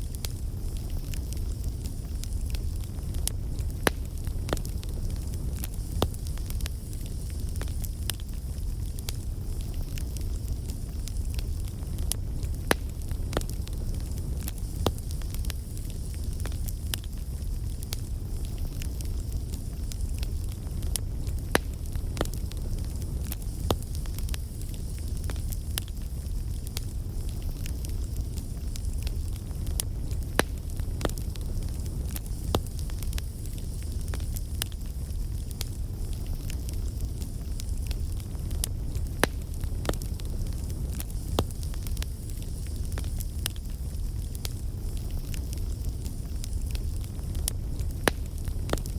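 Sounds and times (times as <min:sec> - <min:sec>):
fire crackling and popping: 0:00.0 - 0:48.9
wood fire rumbling: 0:00.0 - 0:48.9.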